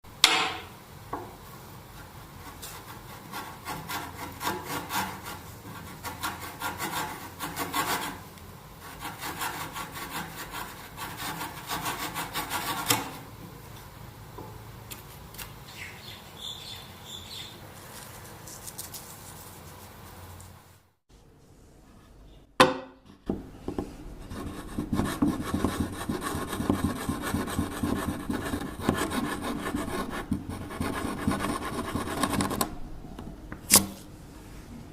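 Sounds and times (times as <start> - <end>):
hand tool cutting wood: 24.2 - 32.7.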